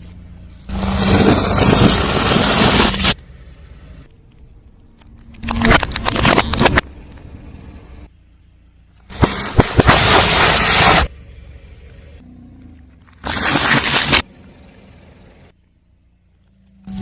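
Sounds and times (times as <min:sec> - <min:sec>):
car tyre crushing crunchy objects: 0:00.0 - 0:03.2, 0:04.0 - 0:07.5, 0:08.9 - 0:11.1, 0:12.5 - 0:15.3.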